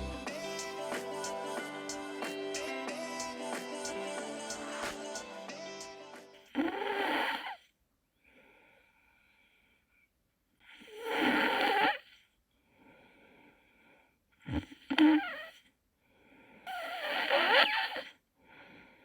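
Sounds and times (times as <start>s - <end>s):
background music: 0.0s - 6.4s
faint breathing: 8.2s - 10.9s, 12.2s - 14.2s, 16.0s - 16.8s, 18.4s - 19.0s
man snoring: 10.8s - 12.0s.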